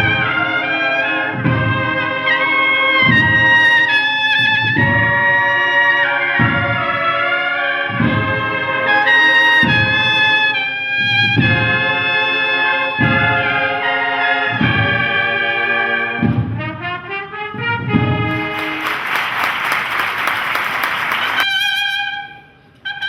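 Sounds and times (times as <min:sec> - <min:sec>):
bugles holding long notes: 0:17.5 - 0:21.8.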